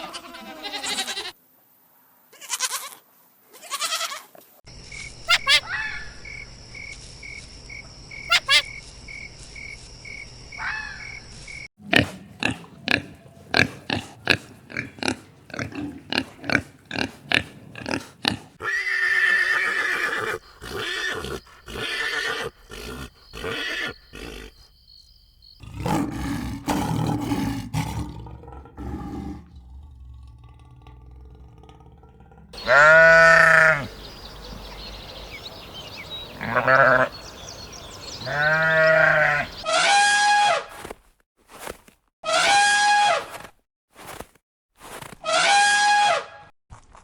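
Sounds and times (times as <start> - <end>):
animal calls: 5.3 - 6.1, 8.3 - 8.8, 11.8 - 24.7, 31.8 - 40.6.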